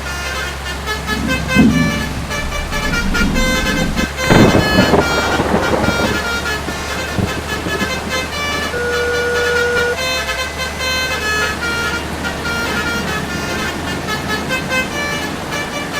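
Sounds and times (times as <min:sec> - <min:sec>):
low engine rumble: 0:00.0 - 0:15.9
bus horns playing melodic notes: 0:04.2 - 0:15.9.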